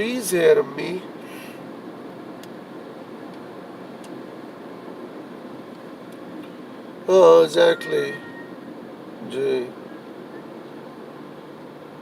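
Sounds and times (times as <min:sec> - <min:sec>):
car running noise from inside: 0:04.9 - 0:12.0.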